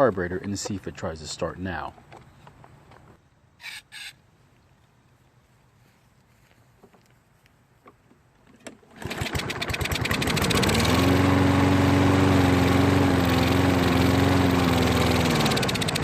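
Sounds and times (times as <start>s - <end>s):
lawn mower engine running: 8.8s - 16.0s.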